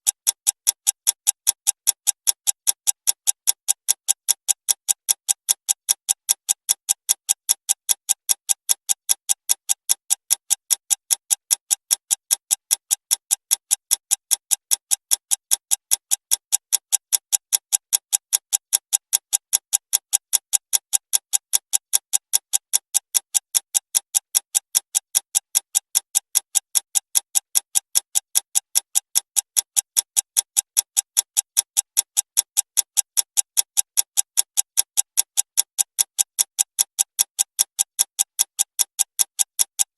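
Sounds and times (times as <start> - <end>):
clock ticking fast: 0.0 - 39.9.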